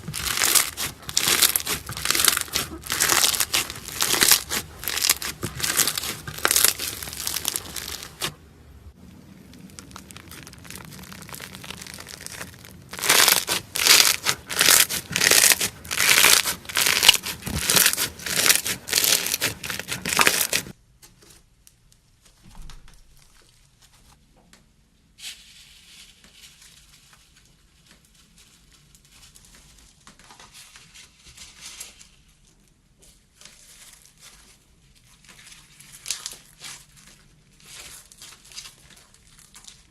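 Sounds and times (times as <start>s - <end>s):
slime crackling and popping: 0.0s - 8.4s, 9.2s - 20.8s.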